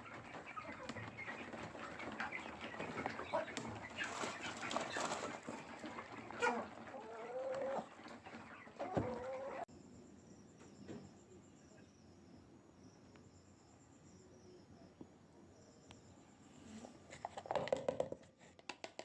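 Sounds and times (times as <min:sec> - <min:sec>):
chickens clucking: 0:00.0 - 0:09.7.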